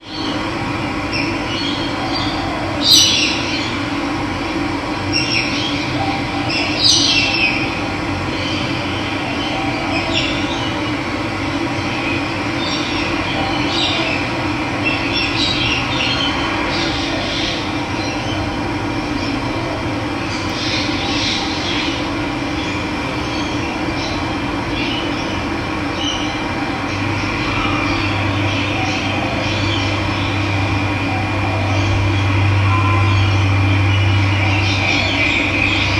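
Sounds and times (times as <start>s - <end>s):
birds calling: 0.0s - 3.9s, 20.2s - 35.9s.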